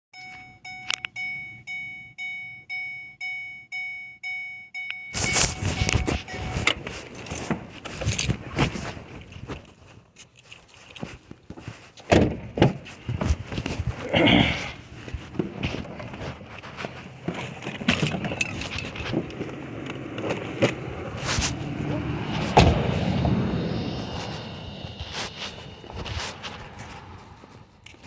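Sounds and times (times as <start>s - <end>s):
electronic chime: 0.2s - 6.7s
handling clatter: 5.2s - 14.0s, 14.8s - 21.8s.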